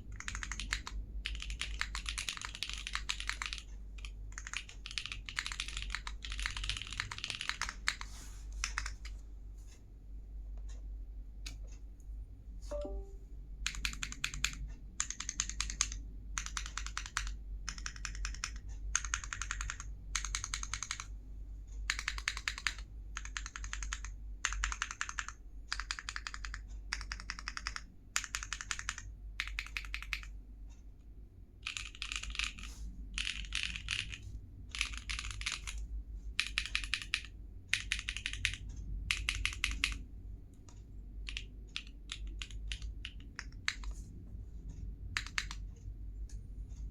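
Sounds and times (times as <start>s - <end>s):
mechanical keyboard typing: 0.0s - 9.1s, 12.7s - 21.1s, 21.8s - 30.3s, 31.6s - 35.8s, 36.4s - 40.1s, 41.2s - 44.0s, 45.1s - 45.7s.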